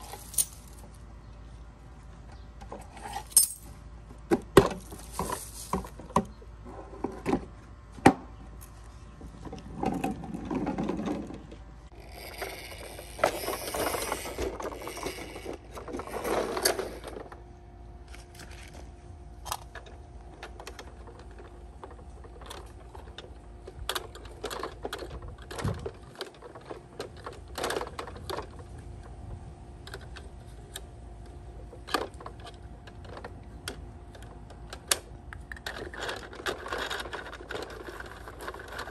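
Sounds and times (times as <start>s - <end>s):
plastic toy clicks and rattles: 19.4s - 28.8s, 31.7s - 38.9s.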